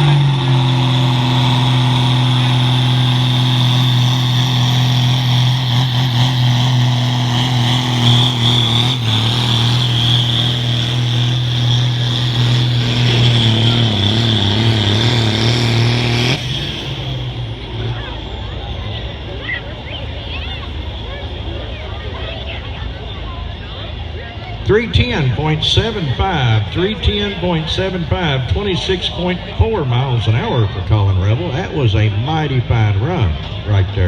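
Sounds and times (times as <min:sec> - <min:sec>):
tractor engine at high revs: 0:00.0 - 0:21.6.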